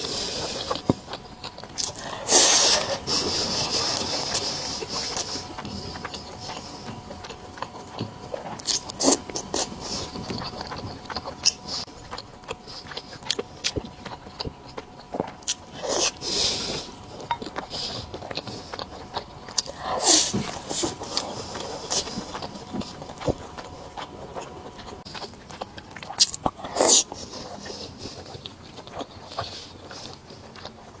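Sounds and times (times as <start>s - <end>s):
person chewing food: 0.0s - 31.0s.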